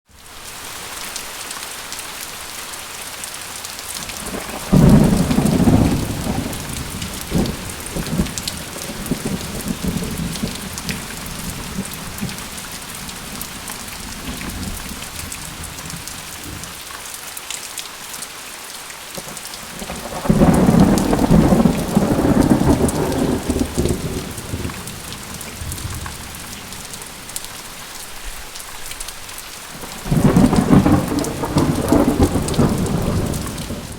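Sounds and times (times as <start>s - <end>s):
heavy rain hissing: 0.2s - 17.3s, 18.8s - 33.9s
thunder rolling: 4.2s - 16.6s, 19.7s - 27.3s, 29.8s - 33.9s.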